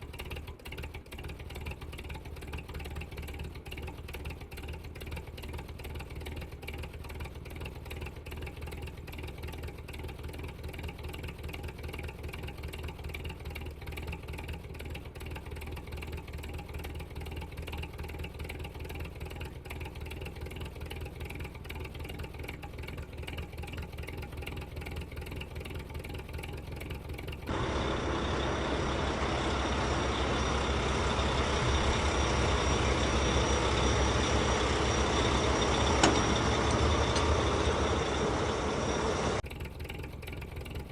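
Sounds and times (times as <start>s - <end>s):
motor humming: 27.5s - 39.4s.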